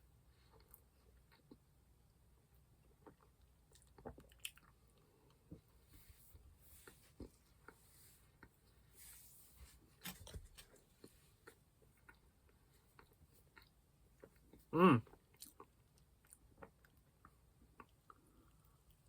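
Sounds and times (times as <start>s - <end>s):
soft chewing with mouth clicks: 0.1s - 19.0s
pitched throat hum: 14.7s - 15.1s.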